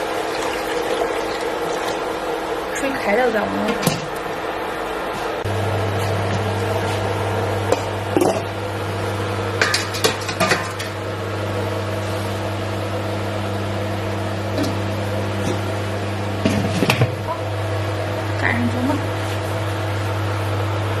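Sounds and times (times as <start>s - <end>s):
electric appliance hum: 0.0s - 21.0s
metal pots clinking: 9.6s - 11.0s.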